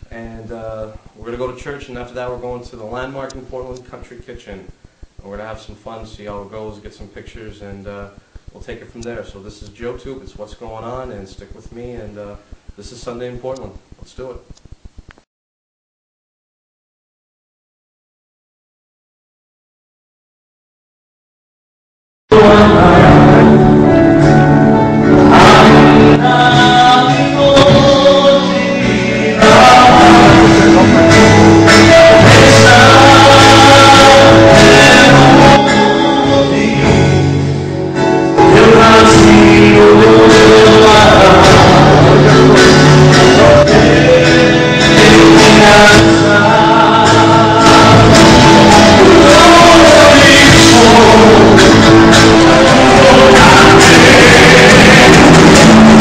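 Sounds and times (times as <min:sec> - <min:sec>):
gospel choir singing: 0:22.3 - 0:56.0
instrumental backing: 0:22.3 - 0:56.0.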